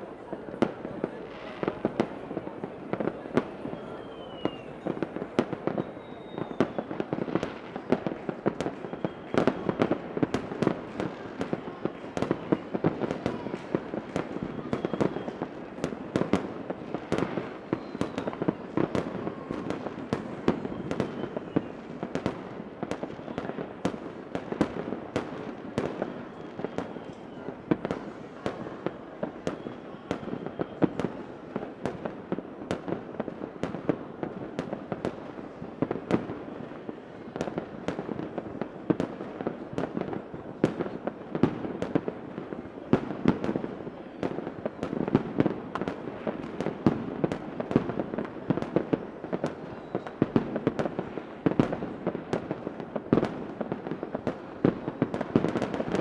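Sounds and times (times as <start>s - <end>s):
fireworks cracking and popping: 0.0s - 56.0s
fireworks whistling: 0.6s - 32.3s, 48.5s - 52.4s.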